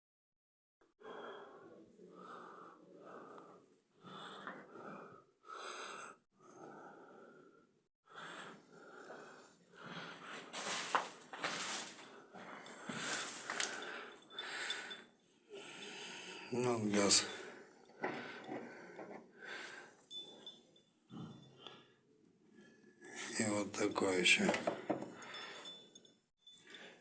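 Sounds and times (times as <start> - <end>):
person breathing heavily: 1.0 - 15.0, 15.6 - 20.5, 24.8 - 25.8
rustling with sharp clicks: 10.4 - 14.3.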